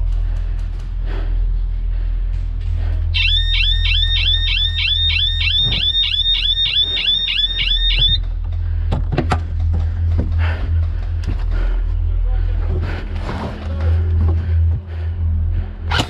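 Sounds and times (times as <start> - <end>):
steady low hum: 0.0 - 16.0
electronic chirping alarm: 3.2 - 8.2.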